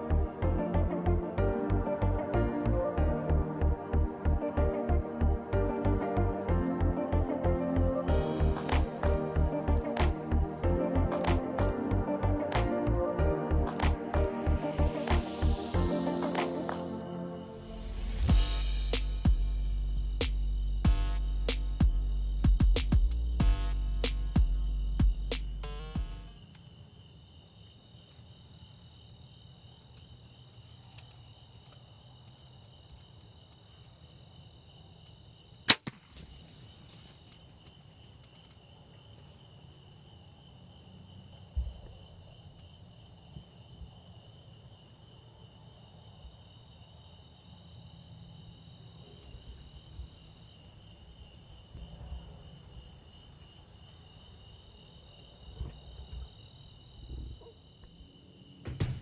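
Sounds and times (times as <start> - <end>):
insects trilling: 7.7 - 59.0
sharp loud snap: 35.7 - 36.2
dull thump: 58.6 - 59.0.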